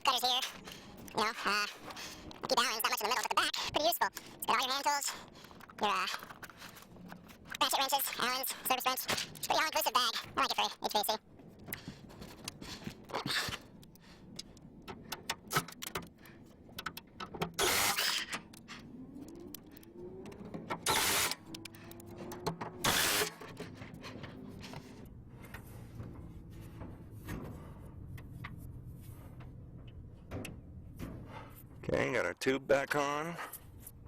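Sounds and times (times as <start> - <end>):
clicks and knocks of tools: 5.2 - 7.6, 8.9 - 9.6, 11.4 - 25.7.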